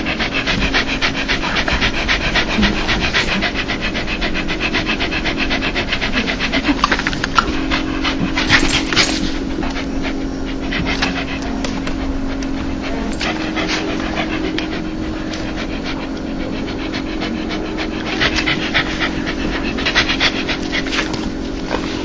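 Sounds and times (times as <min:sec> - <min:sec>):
dog panting: 0:00.0 - 0:22.0
low hum: 0:00.0 - 0:22.0.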